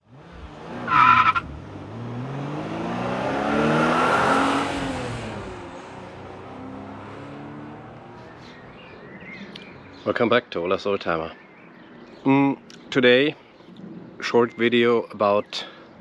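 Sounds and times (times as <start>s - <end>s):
car engine revving: 0.0s - 8.3s.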